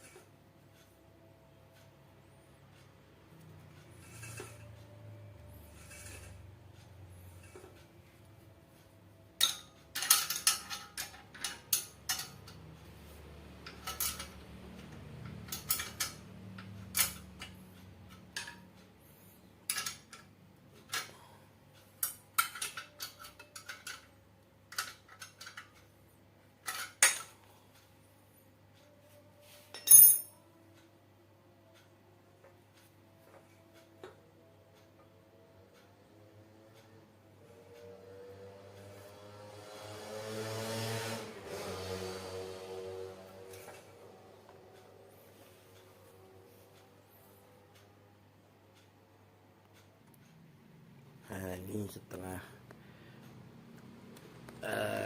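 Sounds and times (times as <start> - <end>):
metal tools clinking: 9.4 - 12.7, 13.6 - 18.6, 19.7 - 20.3, 29.7 - 30.4.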